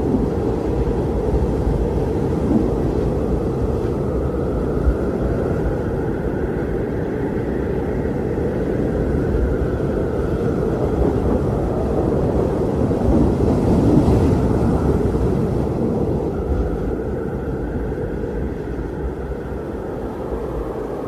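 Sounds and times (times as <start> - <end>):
strong wind blowing: 0.0 - 21.0.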